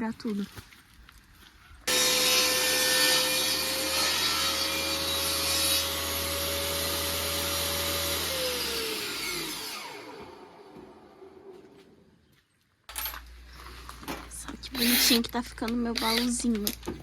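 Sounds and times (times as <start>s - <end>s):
power tool motor whining: 1.9s - 11.6s, 14.7s - 16.9s.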